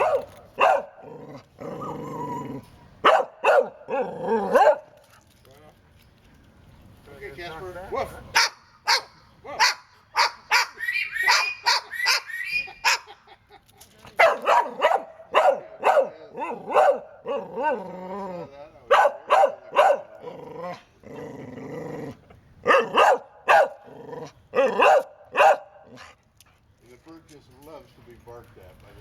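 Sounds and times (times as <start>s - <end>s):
dog barking: 0.0s - 1.0s, 3.0s - 4.9s, 8.4s - 13.0s, 14.2s - 17.8s, 18.9s - 20.1s, 22.7s - 23.8s, 24.6s - 25.8s.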